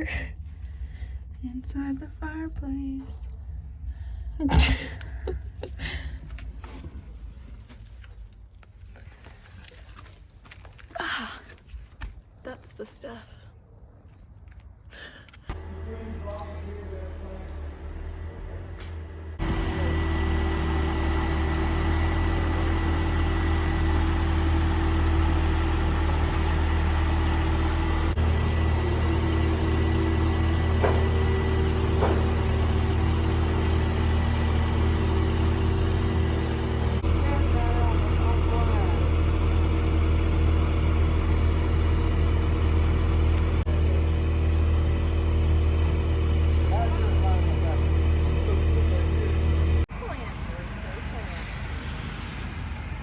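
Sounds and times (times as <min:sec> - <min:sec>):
vehicle engine and cabin hum: 0:15.5 - 0:51.8.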